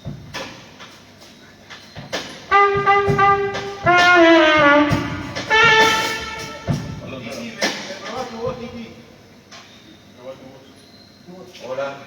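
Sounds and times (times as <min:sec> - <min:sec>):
horn playing held notes: 0:02.5 - 0:07.2
low thumps: 0:02.5 - 0:07.2.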